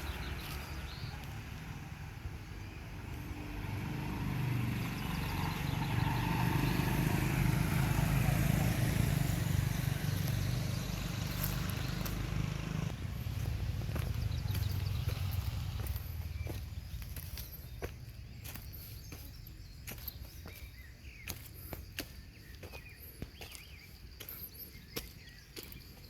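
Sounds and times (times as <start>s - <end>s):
vehicle engine passing: 0.0s - 20.2s.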